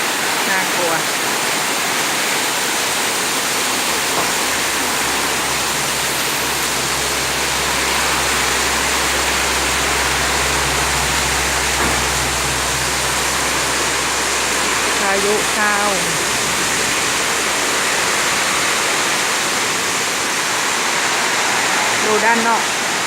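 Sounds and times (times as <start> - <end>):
heavy rain pouring: 0.0 - 23.0
low rumble: 3.0 - 20.9.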